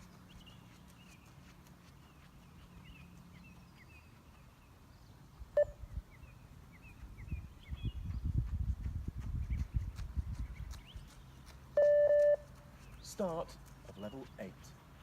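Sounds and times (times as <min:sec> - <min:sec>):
short electronic beep: 0:11.8 - 0:12.4.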